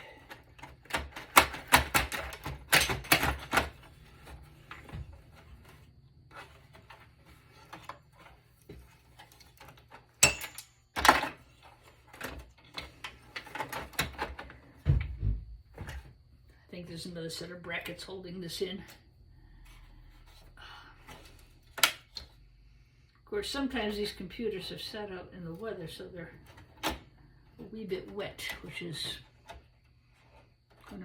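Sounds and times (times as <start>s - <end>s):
computer case parts clicking: 0.2s - 4.8s.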